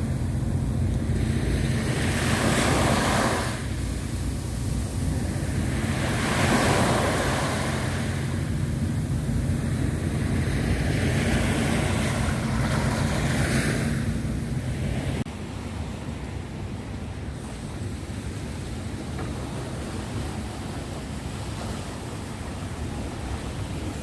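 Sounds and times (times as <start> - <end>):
sea waves washing onto shore: 0.0 - 24.0
wind rumble on microphone: 0.0 - 24.0.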